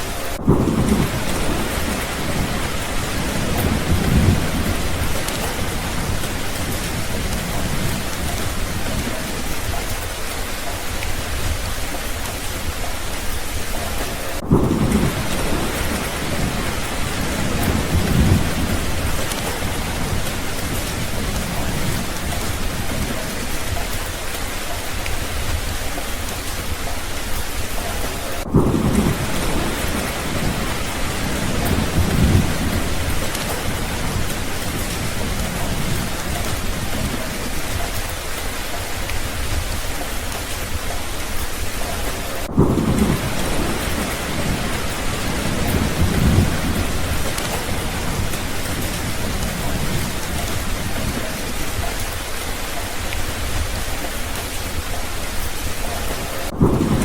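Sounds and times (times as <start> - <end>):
steady rain falling: 0.0 - 57.0
thunder rolling: 0.0 - 57.0.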